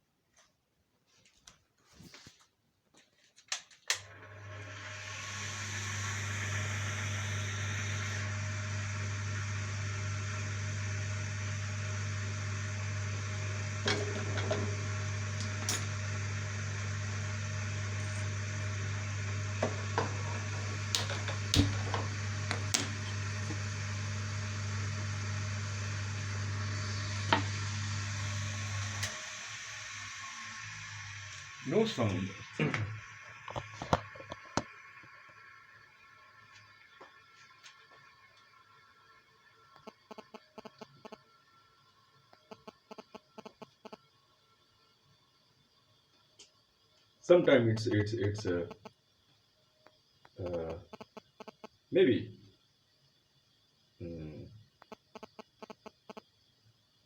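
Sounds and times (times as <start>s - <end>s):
electric machine hum: 4.0s - 41.2s, 47.4s - 48.9s.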